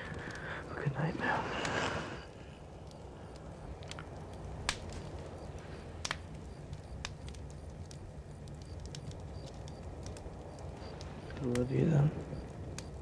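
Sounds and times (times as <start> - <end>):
campfire crackling and popping: 0.0 - 13.0.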